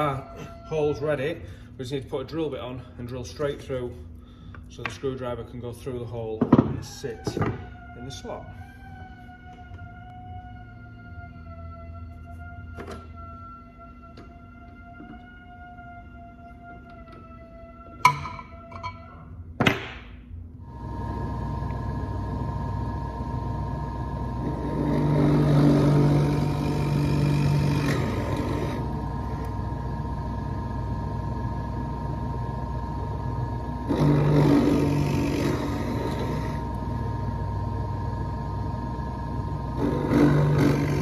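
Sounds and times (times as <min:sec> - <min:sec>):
power drill cutting wood: 0:24.2 - 0:29.6, 0:33.8 - 0:37.0, 0:39.7 - 0:41.0.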